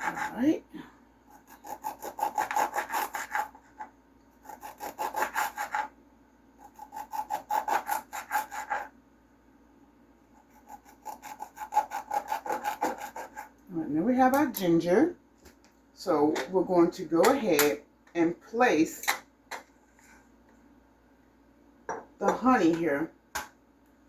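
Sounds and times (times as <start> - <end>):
knife cutting on a cutting board: 0.0 - 0.6, 1.3 - 5.9, 6.6 - 8.9, 10.4 - 13.6.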